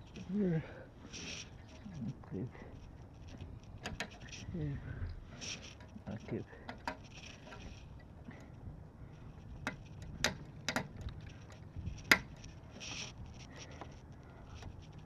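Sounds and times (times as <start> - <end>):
clicks and knocks of plate bracket: 9.6 - 11.1
brief rustle: 11.1 - 15.0.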